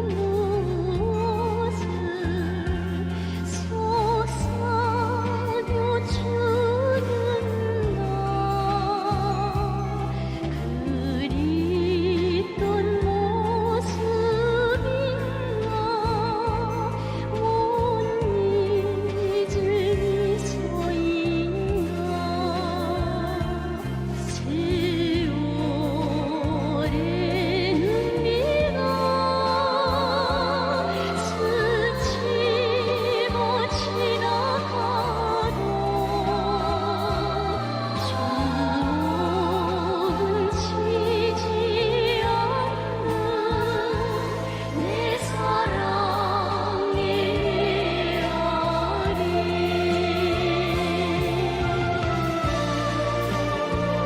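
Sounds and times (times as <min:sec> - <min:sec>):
person singing with vibrato: 0:00.0 - 0:54.0
pop accompaniment with bass line: 0:00.0 - 0:54.0
choir singing: 0:29.1 - 0:54.0.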